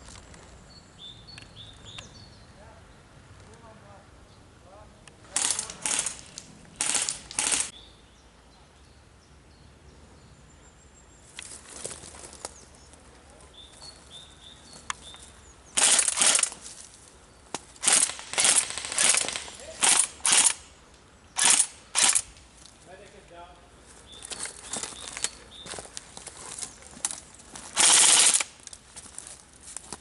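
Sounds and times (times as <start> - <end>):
airsoft guns firing bursts: 5.3 - 7.7, 15.8 - 16.6, 17.8 - 20.6, 21.4 - 22.3, 27.8 - 28.5.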